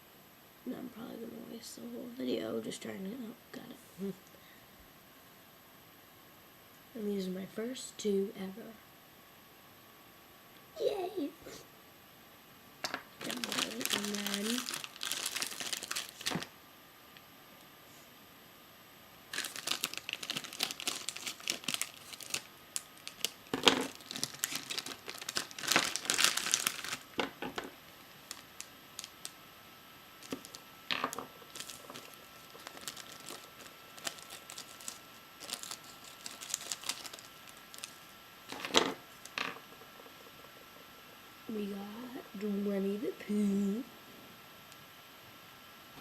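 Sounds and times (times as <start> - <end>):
plastic packet crinkling and tearing: 13.2 - 16.5, 19.3 - 27.3, 28.2 - 29.4, 30.2 - 39.4.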